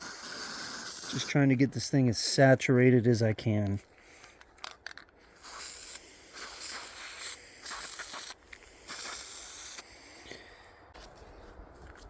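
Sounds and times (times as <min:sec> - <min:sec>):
aerosol can spraying: 0:00.0 - 0:01.3, 0:05.4 - 0:09.8.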